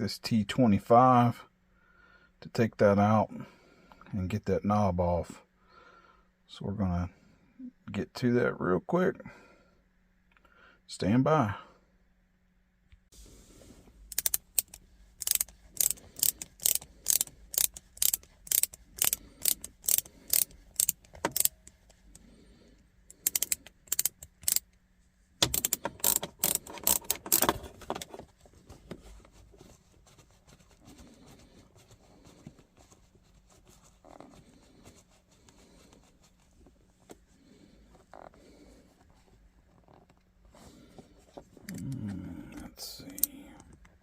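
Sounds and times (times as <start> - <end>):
ratchet driver clicking: 14.1 - 22.1, 23.1 - 24.8, 25.4 - 28.1.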